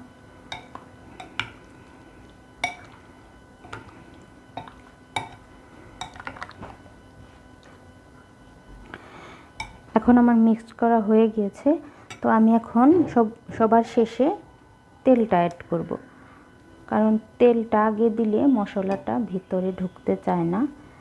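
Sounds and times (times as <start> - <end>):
faint steady hum: 0.0 - 21.0
utensil clinking against bowl: 2.6 - 3.0, 4.6 - 5.4.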